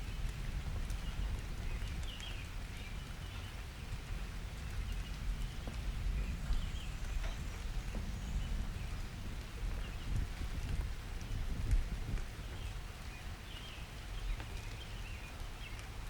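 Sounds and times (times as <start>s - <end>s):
low thunder rumble: 0.0s - 14.5s
rain falling: 0.0s - 16.0s
sharp drip ticks: 0.1s - 8.7s, 9.3s - 16.0s.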